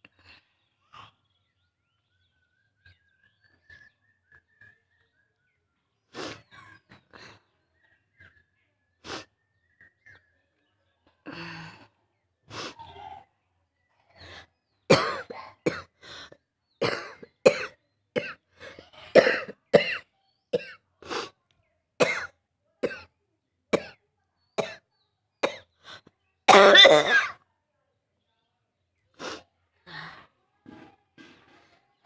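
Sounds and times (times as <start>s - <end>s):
person coughing: 14.9s - 15.9s, 16.8s - 18.4s, 19.1s - 20.0s, 22.0s - 23.0s, 26.5s - 27.4s
person clearing throat: 16.8s - 18.4s, 19.1s - 20.0s, 26.5s - 27.4s.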